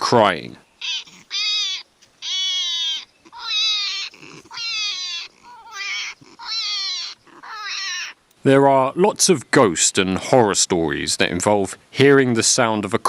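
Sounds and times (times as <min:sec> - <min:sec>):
hedgehog screaming: 0:00.8 - 0:08.2.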